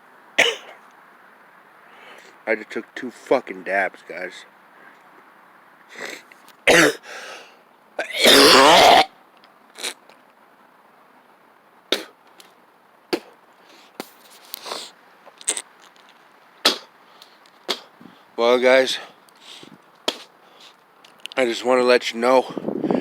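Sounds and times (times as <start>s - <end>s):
man coughing: 0.4s - 0.8s, 6.1s - 7.0s.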